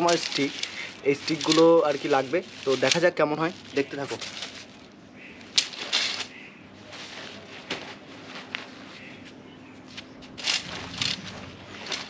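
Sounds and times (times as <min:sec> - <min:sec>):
tent poles knocking and clinking: 0:00.0 - 0:03.1.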